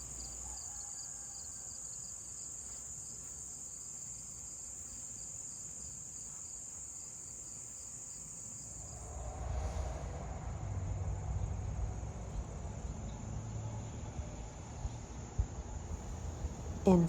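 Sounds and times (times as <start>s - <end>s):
insects trilling: 0.0s - 9.1s
low rumble: 8.8s - 17.0s.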